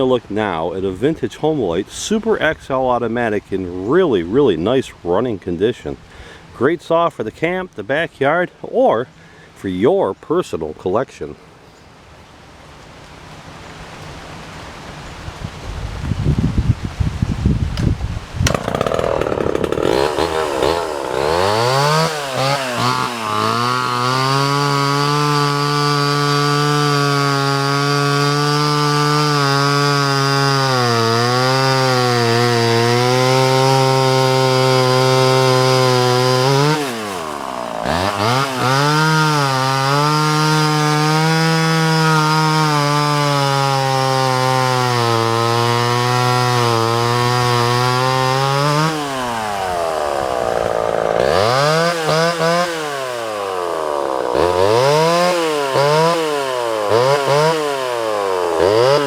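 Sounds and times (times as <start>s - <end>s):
chainsaw engine revving: 18.4s - 59.0s.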